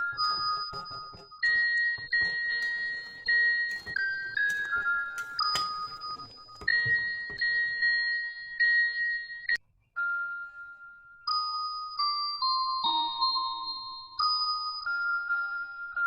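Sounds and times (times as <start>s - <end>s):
slow melody of ringing notes: 0.0s - 16.0s.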